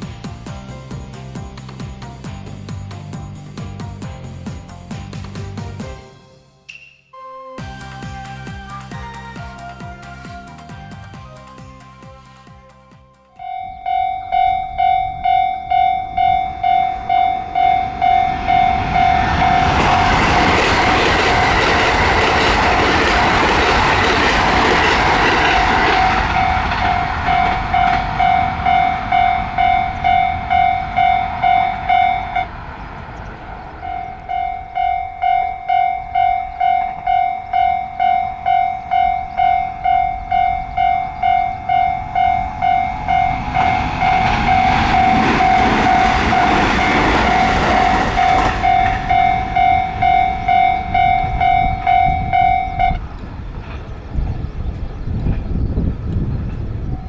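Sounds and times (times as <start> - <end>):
train rushing past: 0.0 - 6.6, 7.6 - 57.0
level-crossing bell dings: 13.4 - 20.7, 25.6 - 32.5, 33.8 - 53.0.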